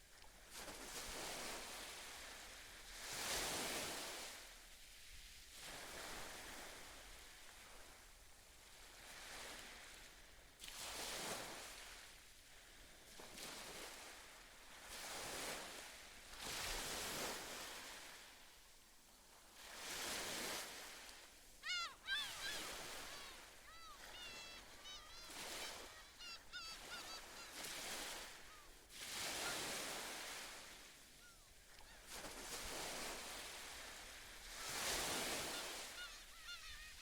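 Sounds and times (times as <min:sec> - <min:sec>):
waves washing onto shore: 0:00.0 - 0:37.0
seabird calling: 0:21.4 - 0:32.3, 0:34.5 - 0:37.0.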